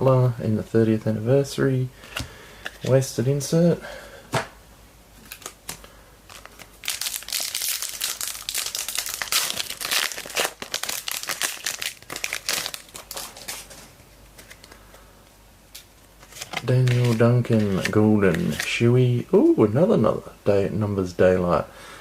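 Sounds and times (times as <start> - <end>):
foil wrapper crinkling: 5.2 - 14.8, 16.3 - 18.8.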